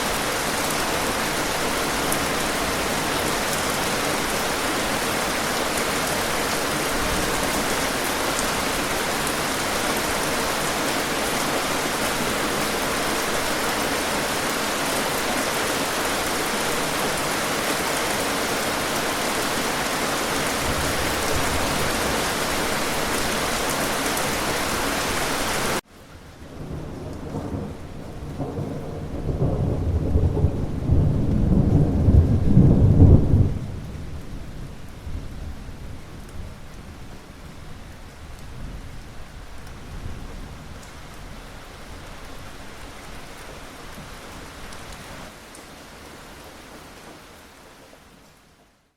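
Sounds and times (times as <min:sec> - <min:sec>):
rain hiss: 0:00.0 - 0:29.8
low rolling thunder: 0:26.4 - 0:37.0.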